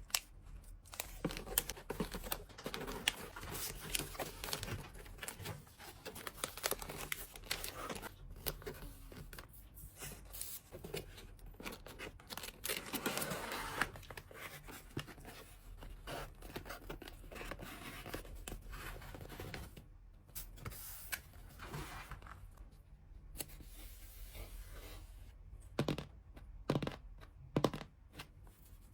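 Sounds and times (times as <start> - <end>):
plastic wrap crinkling and tearing: 0.0 - 8.6.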